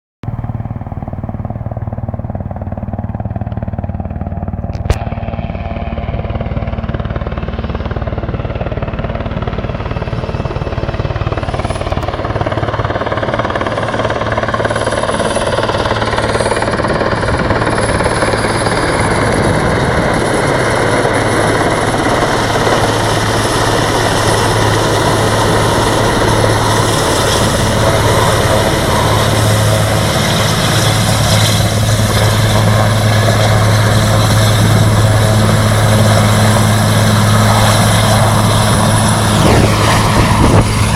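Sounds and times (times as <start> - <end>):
helicopter rotor hum: 0.2 - 40.9
dense whirring noise: 25.3 - 40.9.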